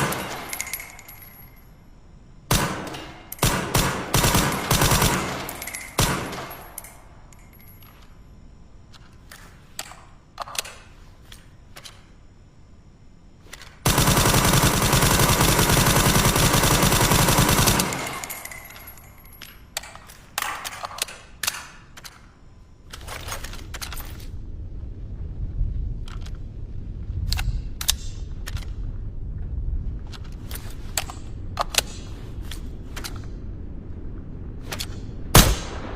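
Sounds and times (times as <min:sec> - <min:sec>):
suppressed automatic gunfire burst: 0:13.8 - 0:18.3.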